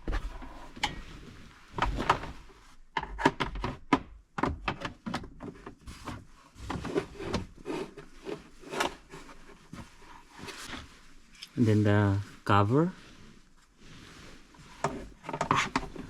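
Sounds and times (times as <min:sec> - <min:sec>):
plastic parts scraping and knocking: 0:00.0 - 0:11.5, 0:14.6 - 0:16.0.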